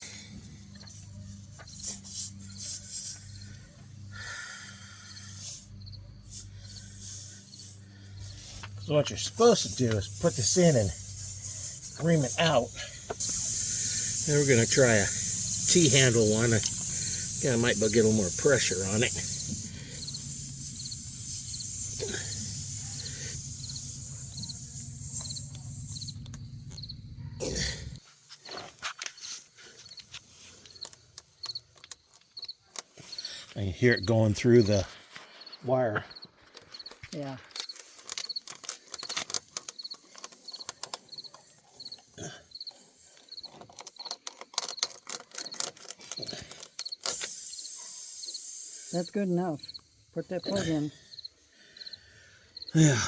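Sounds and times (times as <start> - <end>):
high hiss: 0.0 - 28.0, 46.9 - 51.2
short cricket-like chirp: 0.1 - 53.0
low hum: 21.9 - 28.0
tyre reamer scraping and clicking: 36.5 - 42.0, 43.2 - 47.4.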